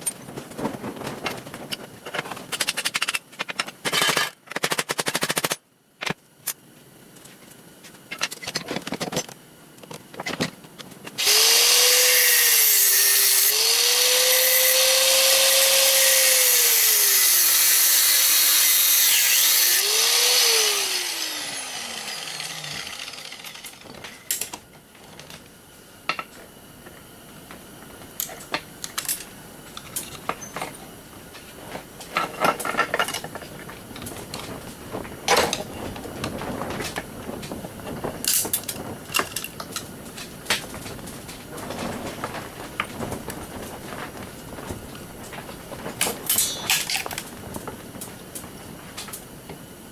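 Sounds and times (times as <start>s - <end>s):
power tool motor whining: 11.2s - 24.0s.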